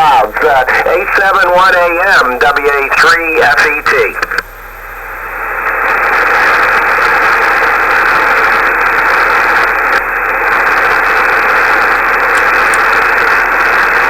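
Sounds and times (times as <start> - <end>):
radio static rushing: 0.0 - 4.4, 5.6 - 14.0.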